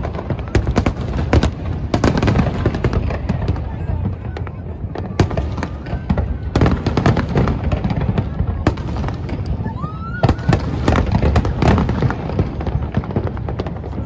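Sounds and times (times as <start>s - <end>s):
fireworks bangs and crackles: 0.0s - 14.0s
firework rising whistle: 9.3s - 11.5s.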